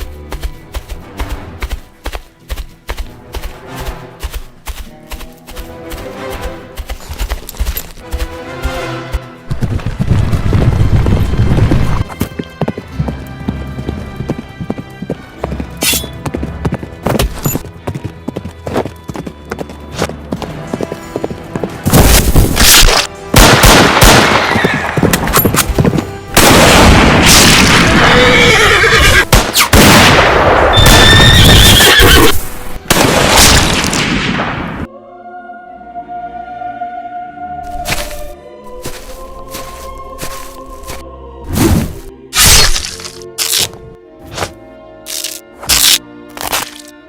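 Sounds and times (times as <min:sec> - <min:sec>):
hooves clip-clopping: 0:00.0 - 0:22.5, 0:24.0 - 0:26.4, 0:37.7 - 0:41.0
background music: 0:00.0 - 0:47.0
horse neighing: 0:28.0 - 0:29.3, 0:30.8 - 0:32.4.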